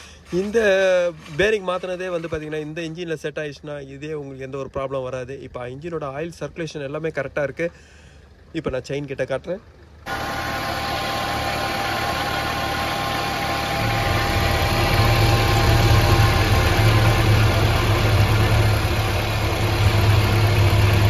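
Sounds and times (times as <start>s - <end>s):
car engine idling: 6.2s - 21.0s.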